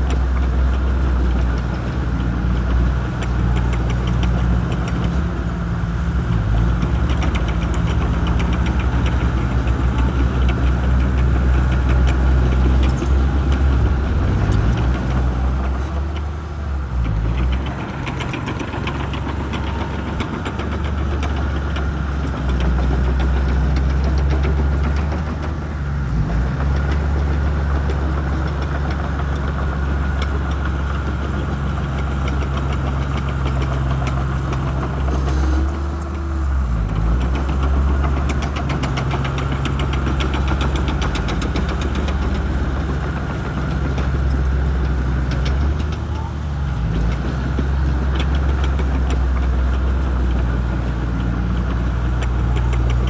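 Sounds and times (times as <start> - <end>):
bulldozer diesel engine running: 0.0 - 53.0
light clatter: 0.0 - 53.0.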